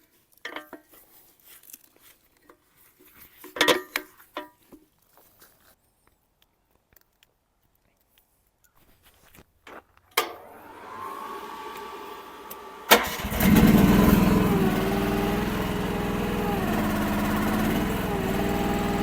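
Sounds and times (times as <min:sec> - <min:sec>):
small engine running: 0:10.4 - 0:19.0.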